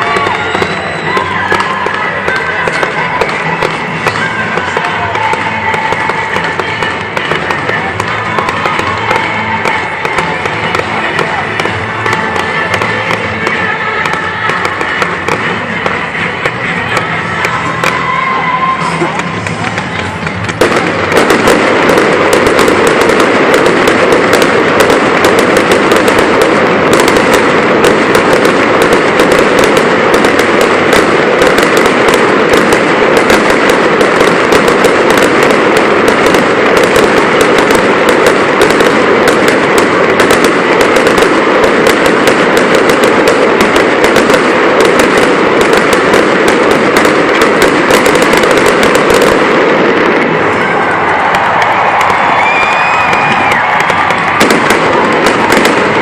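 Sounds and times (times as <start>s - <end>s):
fireworks crackling and popping: 0.0s - 56.0s.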